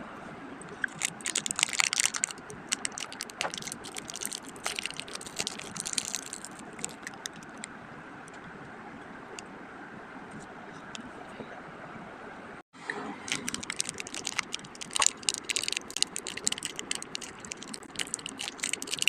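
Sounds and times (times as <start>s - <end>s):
plastic packaging crinkling: 0.7s - 7.7s, 13.3s - 19.0s.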